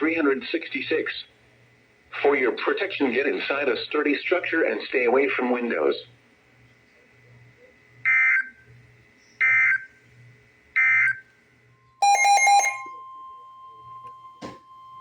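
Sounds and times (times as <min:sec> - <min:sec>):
steady alarm tone: 0:12.0 - 0:13.2.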